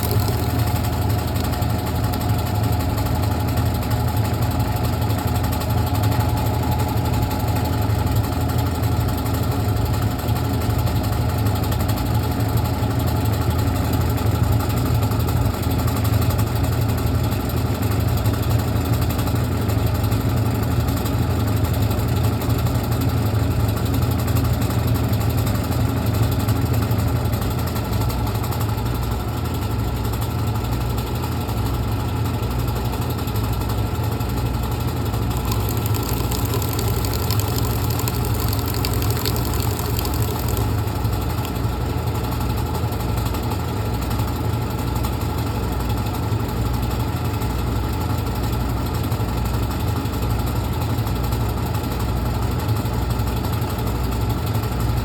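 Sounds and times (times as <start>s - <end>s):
washing machine motor hum: 0.0s - 3.2s, 35.4s - 41.4s.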